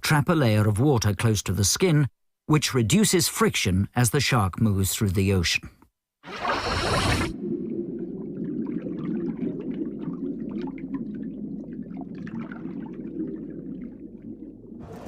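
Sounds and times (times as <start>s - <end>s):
water rushing and bubbling: 6.3s - 15.0s.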